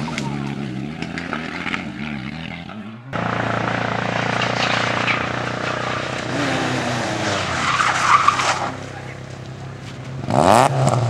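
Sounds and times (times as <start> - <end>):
racing car engine running: 0.0 - 11.0.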